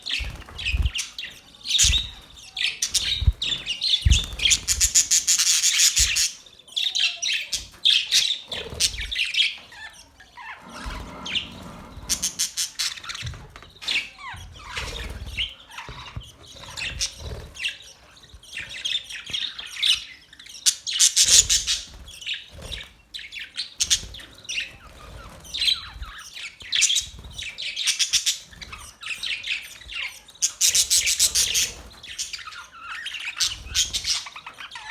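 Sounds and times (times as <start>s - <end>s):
small birds chirping: 0.0s - 34.9s.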